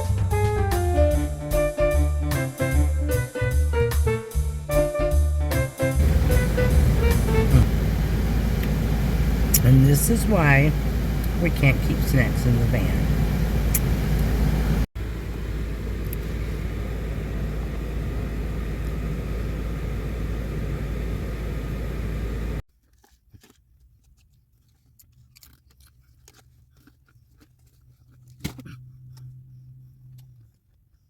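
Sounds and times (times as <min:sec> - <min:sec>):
low rumbling inside a van: 0:06.0 - 0:22.6.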